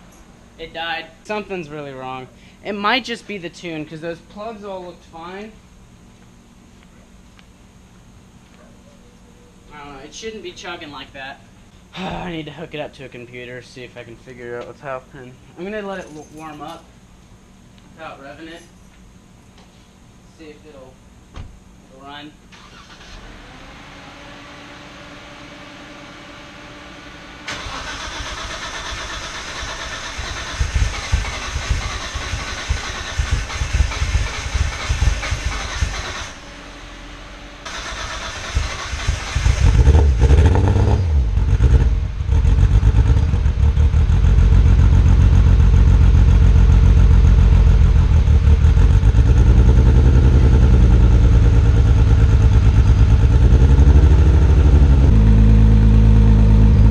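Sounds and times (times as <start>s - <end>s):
car engine starting and idling: 22.5s - 56.9s.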